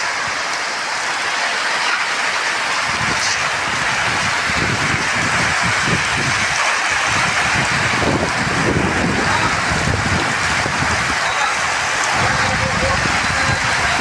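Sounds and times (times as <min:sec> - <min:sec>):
steady rain hissing: 0:00.0 - 0:14.0.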